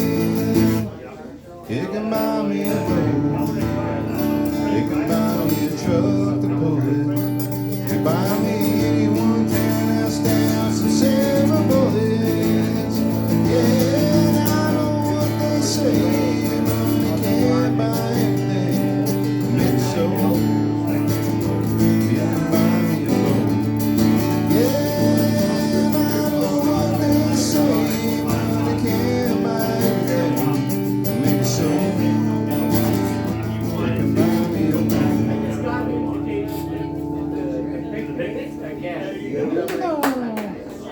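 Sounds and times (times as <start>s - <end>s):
country band playing: 0.0s - 0.9s, 2.0s - 39.7s.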